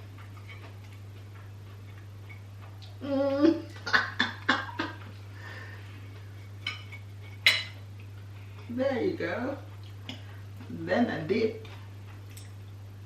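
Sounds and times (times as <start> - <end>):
steady low hum: 0.0 - 13.0
person humming: 3.0 - 3.8.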